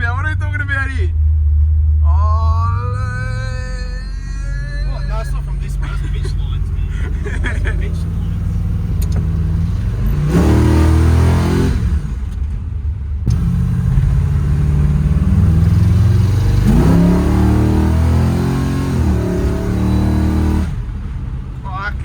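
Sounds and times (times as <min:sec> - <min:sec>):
car engine accelerating: 0:00.0 - 0:22.0.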